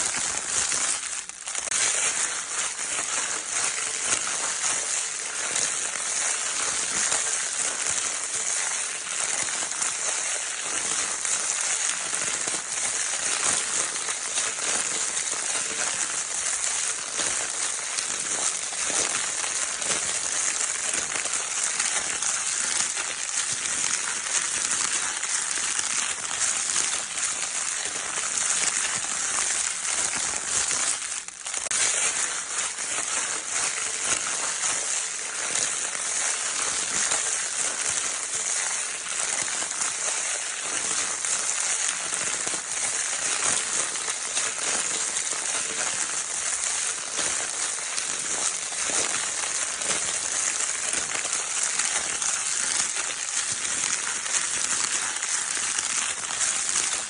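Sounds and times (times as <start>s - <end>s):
crinkle paper crinkling: 0.0s - 57.0s.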